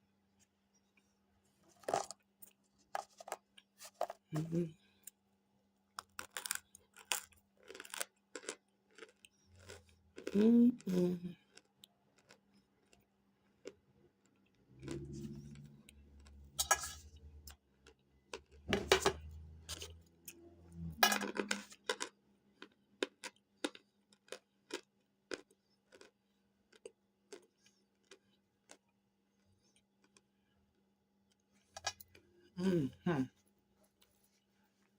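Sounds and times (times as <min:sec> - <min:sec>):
crunchy chewing: 0:06.0 - 0:10.4, 0:11.4 - 0:18.7, 0:21.6 - 0:30.6.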